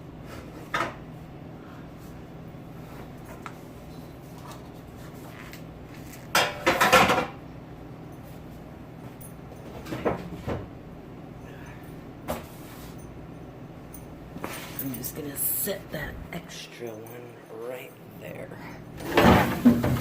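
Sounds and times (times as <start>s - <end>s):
steady low hum: 0.0s - 20.0s
kitchenware clattering: 6.3s - 7.4s.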